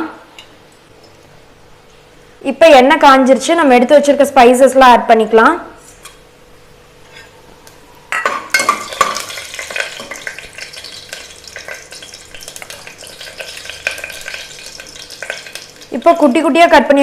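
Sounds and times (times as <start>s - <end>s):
spices sizzling in hot oil: 8.2s - 16.6s.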